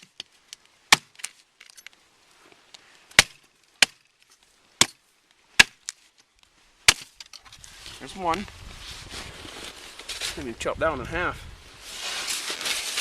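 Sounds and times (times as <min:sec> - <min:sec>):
hatchet chopping wood: 0:00.9 - 0:01.2, 0:03.1 - 0:04.0, 0:04.8 - 0:05.0, 0:05.6 - 0:05.9, 0:06.9 - 0:07.1.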